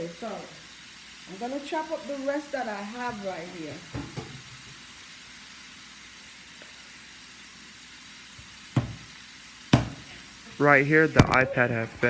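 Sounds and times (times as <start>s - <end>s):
chicken frying in a pot: 0.0s - 12.0s
knock: 8.8s - 9.1s, 9.7s - 10.0s.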